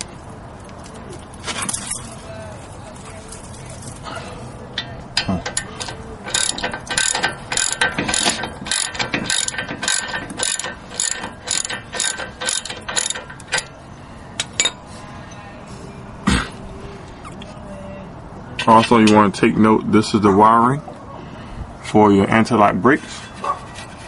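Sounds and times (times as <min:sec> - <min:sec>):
ratchet wrench clicking: 0:05.2 - 0:13.7.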